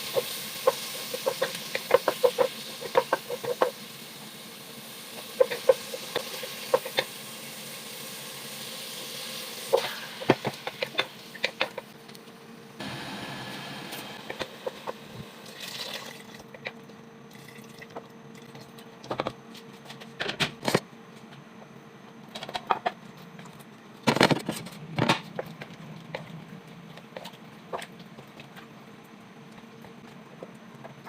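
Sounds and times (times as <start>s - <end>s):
steady low hum: 0.0s - 31.0s
kitchen knocks and clatters: 24.0s - 26.3s.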